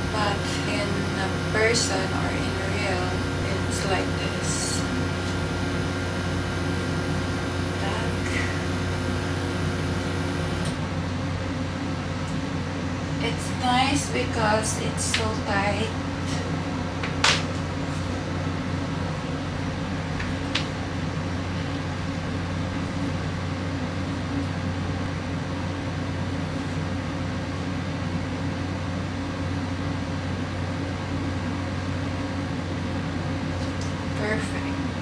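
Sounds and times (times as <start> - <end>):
low machine hum: 0.0 - 35.0.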